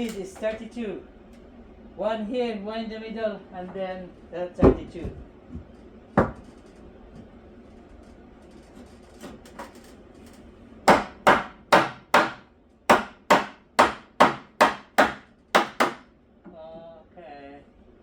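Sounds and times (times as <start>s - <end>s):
hammer hitting nails into wood: 10.9s - 16.1s.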